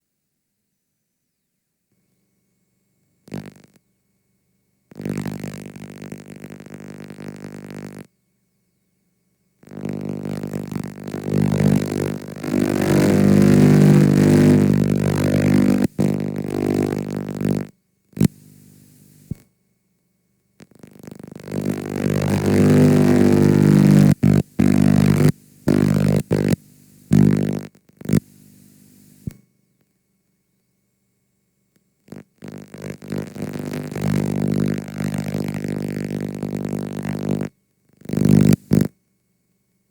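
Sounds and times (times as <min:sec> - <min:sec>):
low distorted tape tone: 0:09.6 - 0:19.4, 0:20.6 - 0:29.4, 0:32.1 - 0:38.9.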